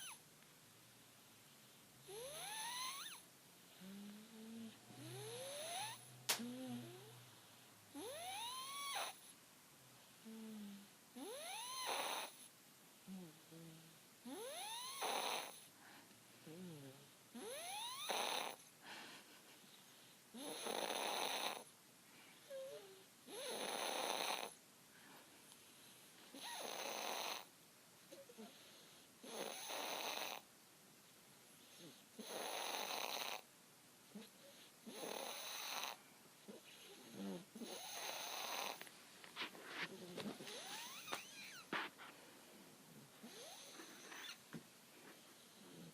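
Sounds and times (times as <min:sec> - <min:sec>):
faint squeaky sounds: 0:00.0 - 0:00.2, 0:39.6 - 0:42.0, 0:43.2 - 0:44.6
baby snoring: 0:02.1 - 0:03.2, 0:03.8 - 0:07.2, 0:07.9 - 0:09.2, 0:10.2 - 0:12.5, 0:13.1 - 0:15.7, 0:16.4 - 0:18.6, 0:20.4 - 0:21.7, 0:22.5 - 0:24.6, 0:26.4 - 0:27.5, 0:29.2 - 0:30.4, 0:31.8 - 0:33.4, 0:34.2 - 0:38.9, 0:39.8 - 0:41.8, 0:43.2 - 0:44.4.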